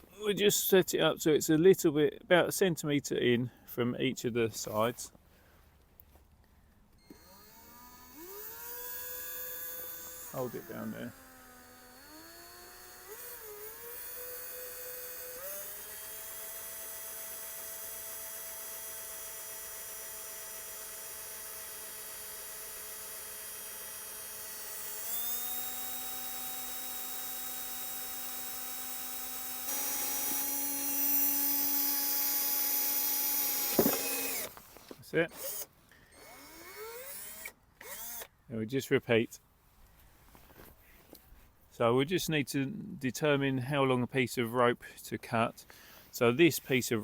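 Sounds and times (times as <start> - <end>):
electric drill boring into wood: 7.0 - 38.3.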